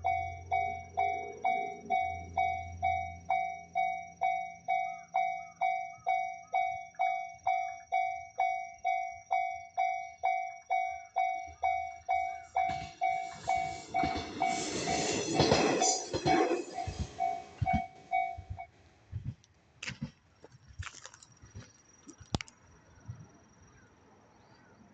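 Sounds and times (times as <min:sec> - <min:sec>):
diesel train passing: 0:00.0 - 0:04.9, 0:11.5 - 0:19.1
level crossing bell ringing: 0:00.0 - 0:18.6.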